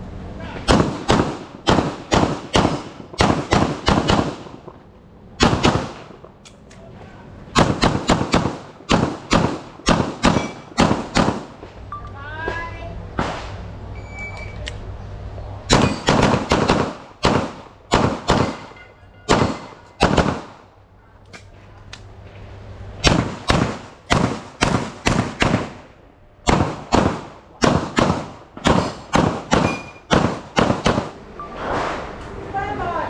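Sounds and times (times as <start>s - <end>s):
pistol gunshots: 0.7s - 4.7s, 5.4s - 6.3s, 7.5s - 11.6s, 15.7s - 20.7s, 23.0s - 31.2s.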